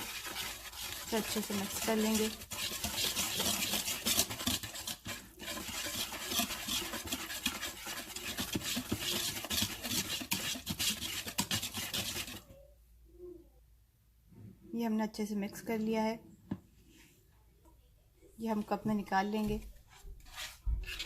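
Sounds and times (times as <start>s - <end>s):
utensil scraping bowl sides: 0.0s - 12.5s, 19.9s - 21.0s
batter stirred in a bowl: 0.0s - 12.6s, 19.4s - 21.0s.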